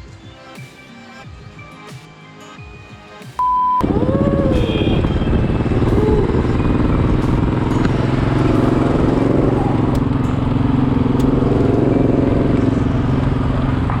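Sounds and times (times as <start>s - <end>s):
soft background music: 0.0s - 3.6s, 4.4s - 14.0s
short steady beep: 3.4s - 3.9s
loud motor engine running: 3.9s - 14.0s.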